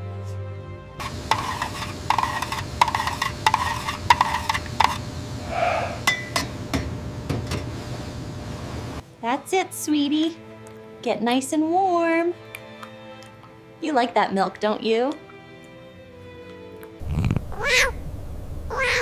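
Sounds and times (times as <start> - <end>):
dishes clinking: 6.0 - 6.9.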